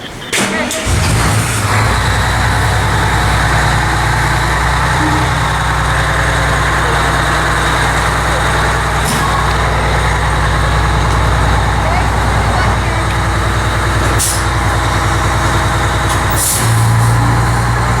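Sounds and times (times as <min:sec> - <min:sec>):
diesel engine idling: 0:00.0 - 0:18.0.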